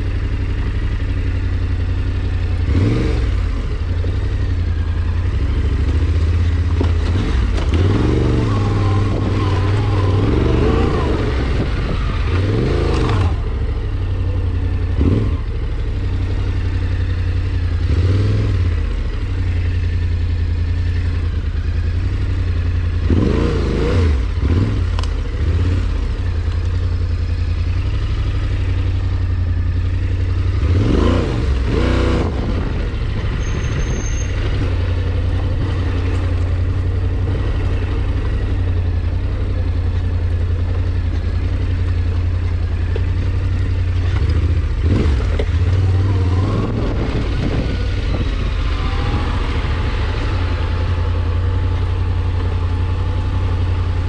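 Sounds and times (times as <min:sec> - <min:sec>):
engine running steadily: 0:00.0 - 0:54.0.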